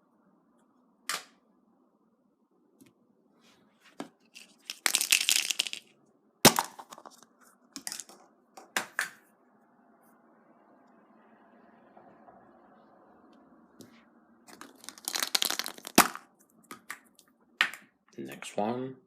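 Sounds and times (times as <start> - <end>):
wrapper crinkling tear: 14.5 - 16.2.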